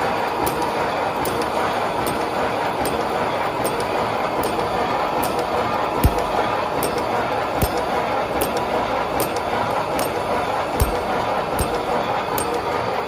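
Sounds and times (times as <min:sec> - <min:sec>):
machine clicking: 0:00.0 - 0:13.0
welding machine running: 0:00.0 - 0:13.0
low thumps: 0:06.0 - 0:06.5, 0:10.8 - 0:11.9.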